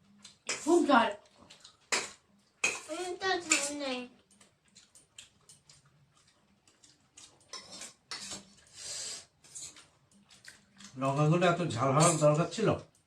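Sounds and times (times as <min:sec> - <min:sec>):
utensils tapping a plate: 0:01.9 - 0:03.8
short hissing noises: 0:08.7 - 0:09.7.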